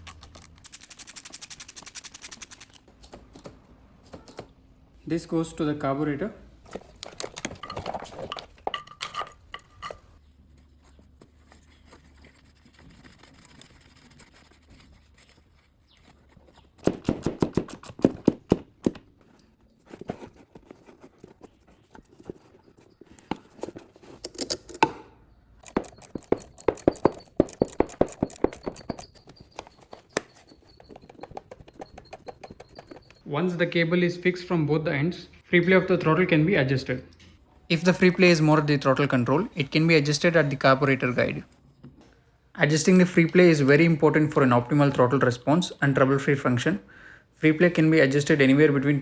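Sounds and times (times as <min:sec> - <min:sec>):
rapid light clicking and clinking: 0:25.6 - 0:33.2.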